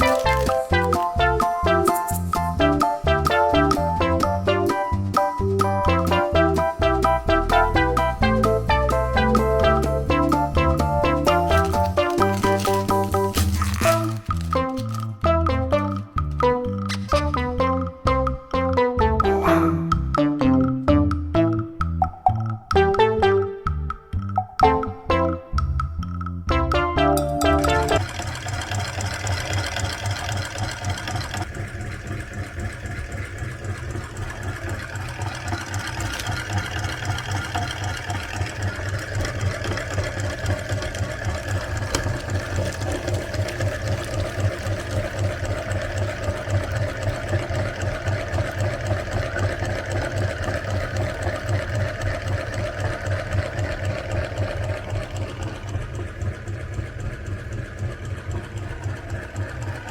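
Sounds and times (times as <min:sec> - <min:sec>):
meat grinder motor running: 0:00.0 - 0:15.2, 0:27.7 - 0:59.9.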